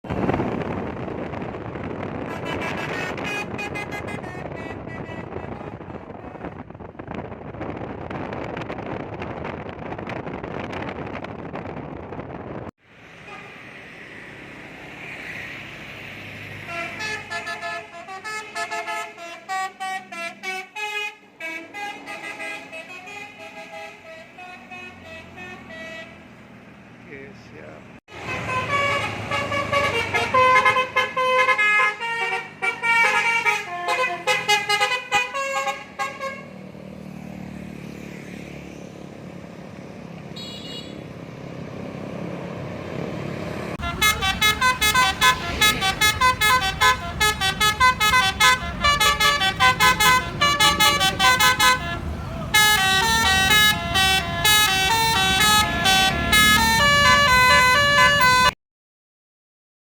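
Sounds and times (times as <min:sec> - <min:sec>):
street noise: 0:00.0 - 0:58.6
bus musical horn melodies: 0:02.0 - 0:06.7, 0:13.1 - 0:14.0, 0:16.5 - 0:26.4, 0:28.1 - 0:36.7, 0:40.4 - 0:41.1, 0:43.8 - 0:58.6.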